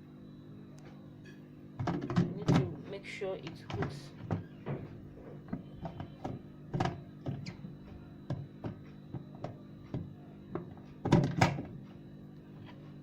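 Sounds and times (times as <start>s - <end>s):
steady low hum: 0.0s - 13.0s
plastic parts knocking and clicking: 1.8s - 2.7s, 3.6s - 11.8s.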